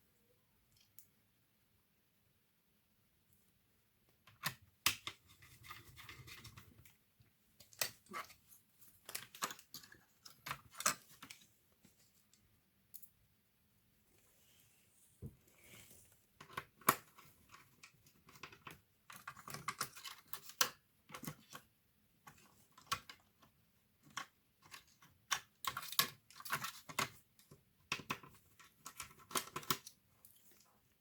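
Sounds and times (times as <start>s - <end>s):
laptop parts clicking and clattering: 4.3s - 7.0s, 7.6s - 11.5s, 16.4s - 30.7s.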